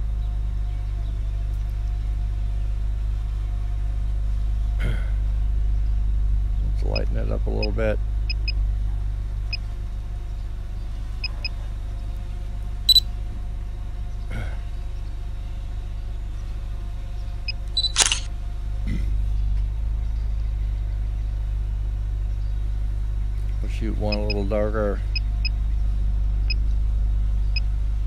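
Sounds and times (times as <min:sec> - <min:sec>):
steady low hum: 0:00.0 - 0:28.0
camera shutter click: 0:17.8 - 0:18.3
faint beeps: 0:17.8 - 0:18.3.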